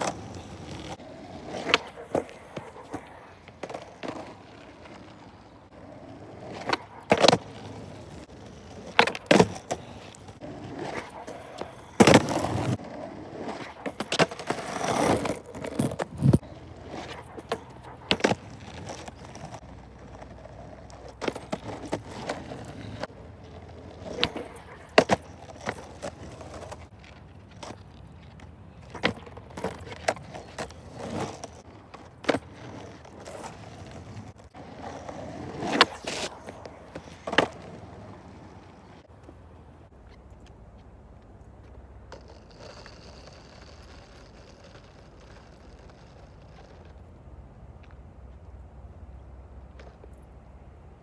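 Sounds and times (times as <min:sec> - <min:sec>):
skateboard clacking on ground: 0:00.0 - 0:40.6, 0:41.3 - 0:47.1
skateboard rolling on pavement: 0:00.0 - 0:51.0.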